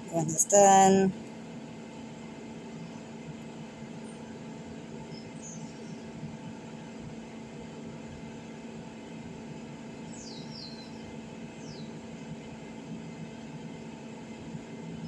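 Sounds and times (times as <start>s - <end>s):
low background hum: 0.0s - 1.5s.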